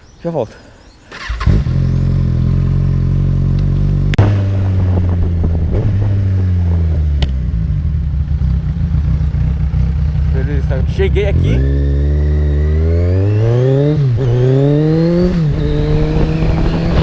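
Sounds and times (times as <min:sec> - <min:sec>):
motorcycle engine running: 0:01.4 - 0:17.0.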